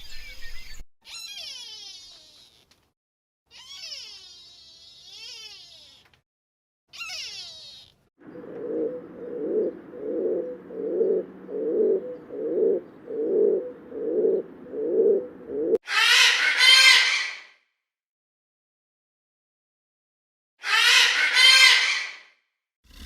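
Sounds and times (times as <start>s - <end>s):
high-pitched animal call: 1.0s - 2.7s, 3.5s - 6.1s, 6.9s - 17.4s
bird cooing: 8.2s - 15.8s.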